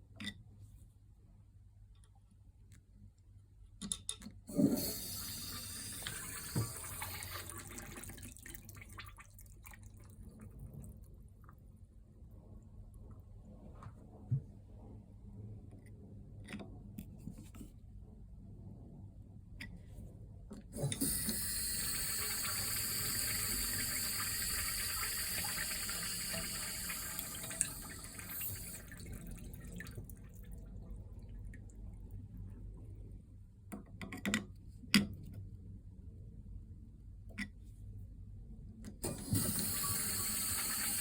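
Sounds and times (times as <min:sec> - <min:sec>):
urinal flushing: 0:04.5 - 0:10.2, 0:20.7 - 0:31.8, 0:39.0 - 0:41.0.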